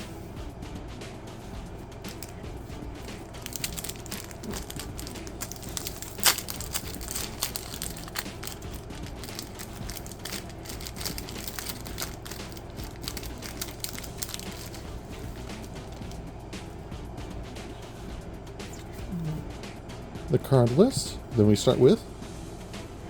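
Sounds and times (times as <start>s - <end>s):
wrapper crinkling: 2.1s - 2.4s, 3.0s - 16.2s.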